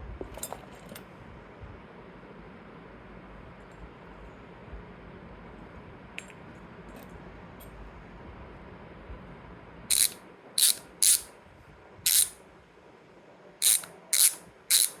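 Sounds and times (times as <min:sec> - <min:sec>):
bicycle hub buzzing clicks: 0:09.9 - 0:11.3, 0:12.1 - 0:12.4, 0:13.6 - 0:15.0.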